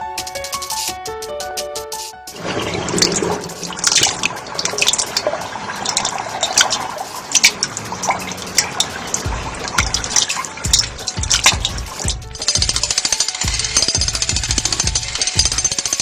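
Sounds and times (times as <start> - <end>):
water running and splashing: 2.3 - 13.0
small sharp drips: 2.4 - 15.9.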